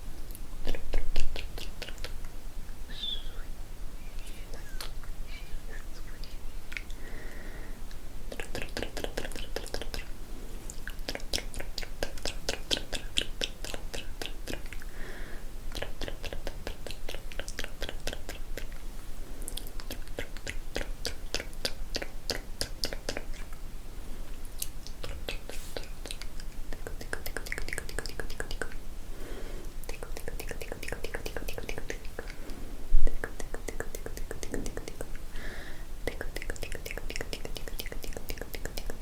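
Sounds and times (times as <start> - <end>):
mouth clicks and smacks: 0.2 - 3.4, 4.2 - 7.0, 7.9 - 14.9, 15.7 - 23.7, 24.3 - 28.9, 29.6 - 35.4, 36.0 - 39.0
soft breathing: 2.9 - 8.0, 10.0 - 11.0, 14.6 - 15.7, 18.7 - 20.2, 25.1 - 26.2, 29.0 - 30.6, 31.3 - 33.2, 34.7 - 36.0.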